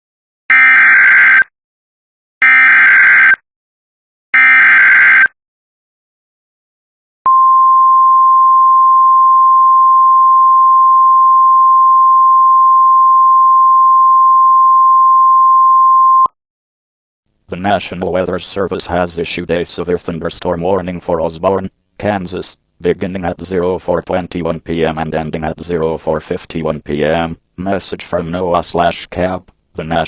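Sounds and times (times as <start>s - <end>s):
steady alarm tone: 0.5s - 1.5s, 2.4s - 3.4s, 4.4s - 5.3s.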